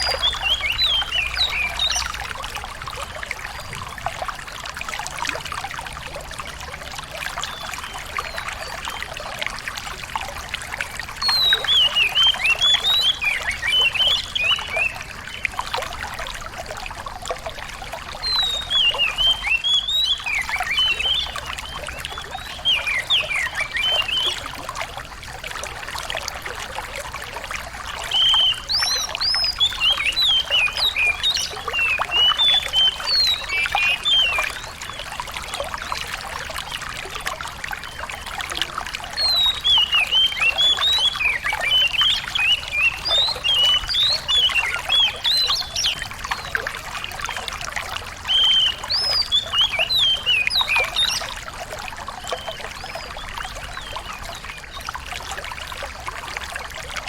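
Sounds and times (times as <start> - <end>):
songbird twittering chirps: 0.0 - 2.3, 11.2 - 16.0, 18.2 - 24.6, 27.9 - 37.2, 37.8 - 47.5, 48.2 - 51.5, 52.1 - 54.8
trickle of running water: 0.0 - 57.0.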